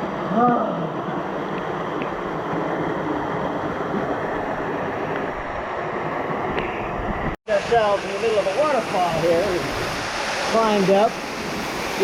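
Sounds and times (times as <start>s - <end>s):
waterfall rushing: 7.5s - 12.0s.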